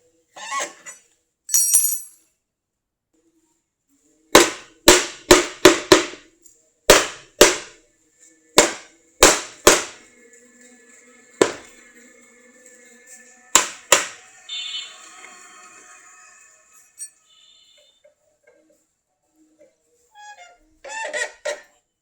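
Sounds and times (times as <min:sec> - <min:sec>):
hammer striking wood: 0:04.4 - 0:06.2, 0:06.9 - 0:07.8, 0:08.6 - 0:10.0, 0:11.4 - 0:11.7, 0:13.6 - 0:14.2.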